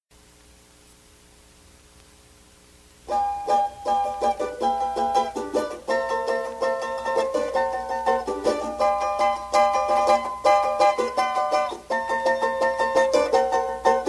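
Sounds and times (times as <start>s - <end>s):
record hiss: 0.1s - 14.0s
plucked string instrument strumming: 3.1s - 14.0s.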